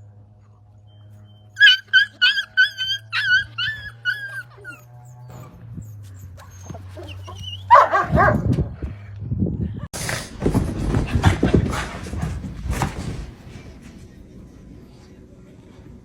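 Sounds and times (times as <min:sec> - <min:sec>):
small dog crying: 0:01.6 - 0:08.2
steady low hum: 0:03.6 - 0:16.0.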